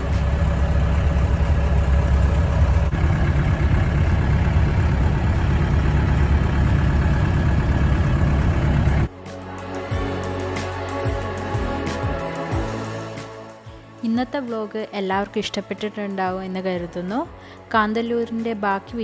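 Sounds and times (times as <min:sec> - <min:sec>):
vehicle engine rumble: 0:00.0 - 0:09.1.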